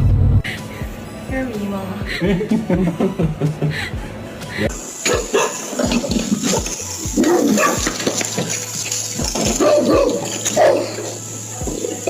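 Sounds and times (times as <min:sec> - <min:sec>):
background music with low beat: 0:00.0 - 0:12.0
dog barking: 0:05.0 - 0:05.7, 0:07.2 - 0:08.0, 0:09.5 - 0:11.2.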